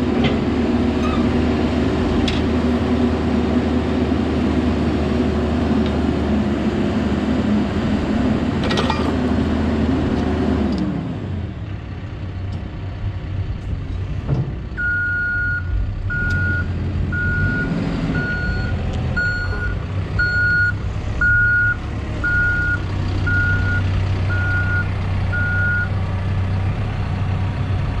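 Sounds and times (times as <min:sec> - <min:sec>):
diesel engine running: 0:00.0 - 0:28.0
reversing alarm beeping: 0:14.8 - 0:25.9.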